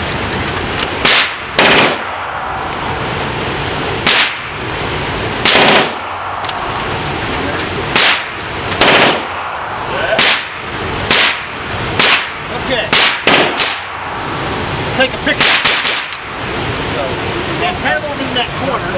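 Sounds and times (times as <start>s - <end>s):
steady hiss: 0.0s - 18.9s
rifle gunfire indoors: 1.0s - 2.4s, 5.4s - 6.3s, 8.0s - 9.6s, 13.0s - 13.9s.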